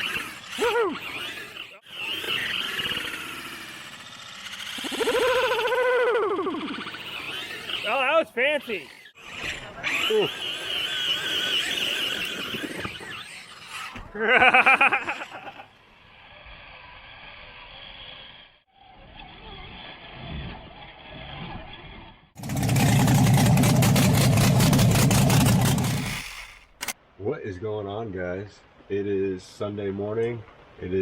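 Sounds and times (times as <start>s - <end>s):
buggy engines revving: 0.0s - 21.4s, 22.4s - 27.0s.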